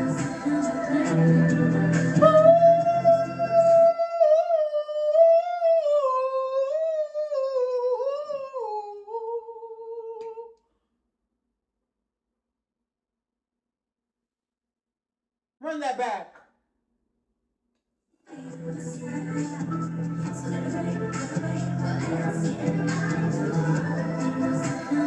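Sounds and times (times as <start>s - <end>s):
pop song with backing: 0.0s - 5.9s, 18.3s - 25.0s
high voice singing unaccompanied: 0.0s - 10.5s, 18.3s - 25.0s.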